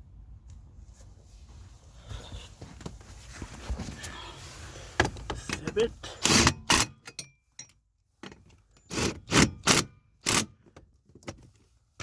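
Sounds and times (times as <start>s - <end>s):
metal tools rattling: 5.4s - 7.8s.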